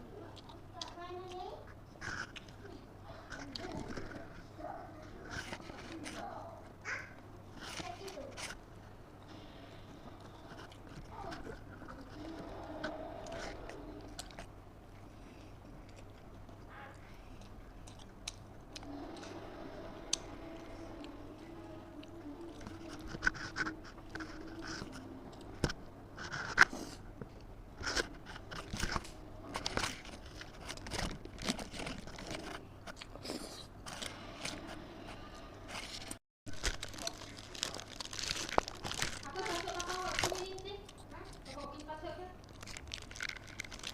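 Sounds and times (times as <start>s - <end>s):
wet chewing: 0.2s - 4.5s, 9.6s - 19.3s, 35.8s - 43.9s.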